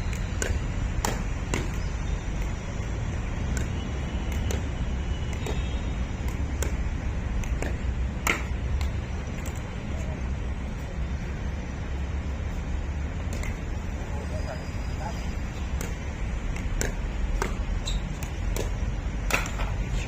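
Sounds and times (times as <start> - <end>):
paddles hitting plastic ball: 0.1 - 9.8, 15.6 - 19.9.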